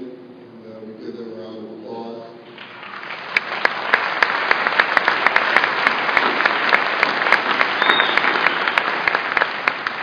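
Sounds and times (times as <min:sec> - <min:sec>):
audience applauding: 0:02.6 - 0:10.0
sharp close claps: 0:02.6 - 0:10.0.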